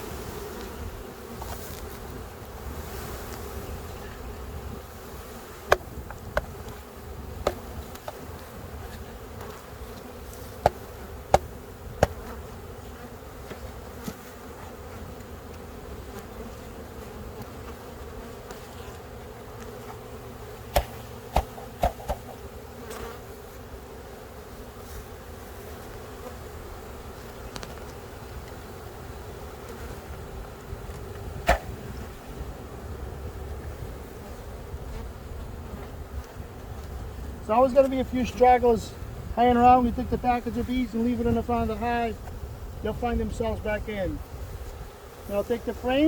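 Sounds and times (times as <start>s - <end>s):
honey bees buzzing: 0.0s - 46.0s
sharp knocks: 20.7s - 22.4s.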